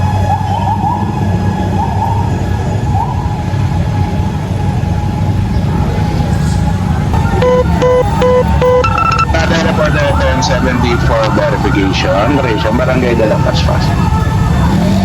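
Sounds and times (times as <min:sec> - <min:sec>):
fire truck engine rumble: 0:00.0 - 0:15.0
siren wailing: 0:00.0 - 0:15.0
short electronic beeps: 0:07.2 - 0:10.4.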